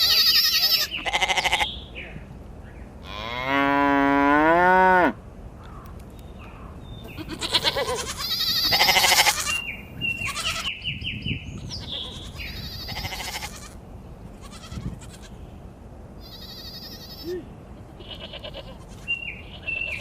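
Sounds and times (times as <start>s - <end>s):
sheep bleating: 0.0s - 1.7s, 7.1s - 9.6s, 10.2s - 10.7s, 11.8s - 13.8s, 14.4s - 15.4s, 16.2s - 20.0s.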